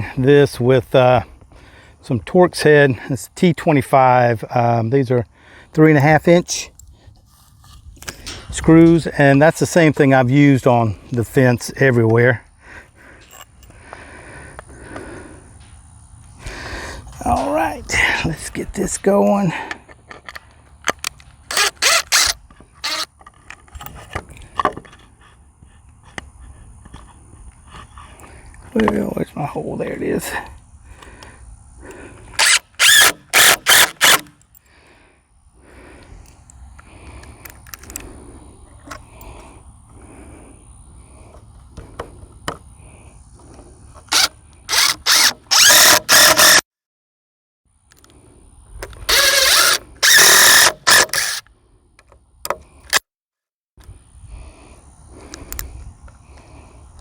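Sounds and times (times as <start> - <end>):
power drill driving screws: 21.5 - 23.1, 32.4 - 34.3, 44.1 - 46.6, 49.0 - 51.4.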